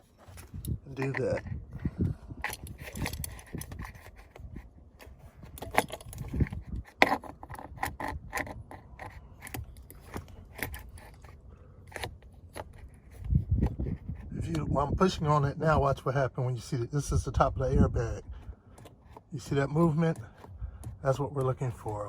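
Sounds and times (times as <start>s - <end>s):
metal tool clicking and scraping: 0.3s - 1.6s, 2.4s - 14.7s, 18.3s - 22.0s.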